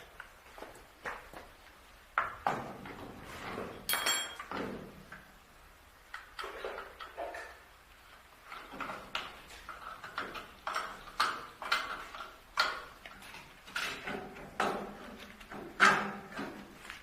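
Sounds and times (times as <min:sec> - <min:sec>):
parts knocking and scraping: 0:08.4 - 0:17.0.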